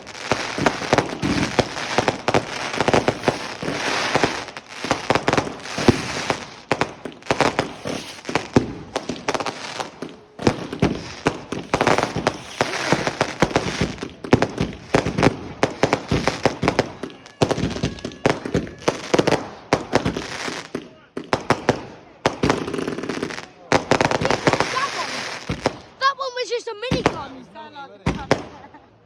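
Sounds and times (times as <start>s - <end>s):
fireworks bangs and crackling: 0.0s - 29.0s.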